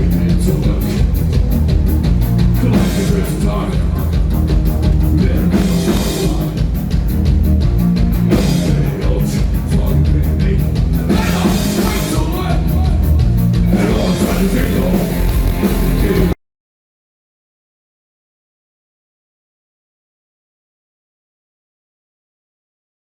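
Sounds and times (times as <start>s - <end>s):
person singing: 0.0s - 1.2s, 2.6s - 6.8s, 8.3s - 16.4s
loud band with heavy bass: 0.0s - 16.4s
steady drum beat: 0.0s - 16.4s.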